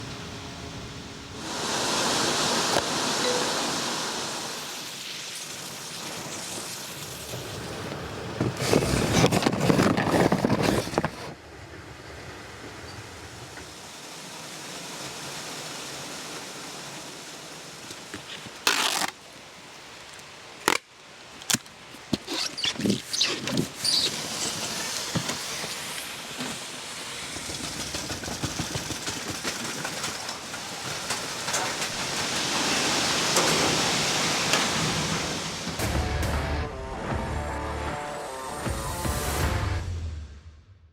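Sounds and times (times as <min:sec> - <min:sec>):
rushing hiss: 0:01.4 - 0:07.8, 0:23.1 - 0:35.8
loud crackling rustle: 0:05.2 - 0:11.4, 0:17.9 - 0:35.7.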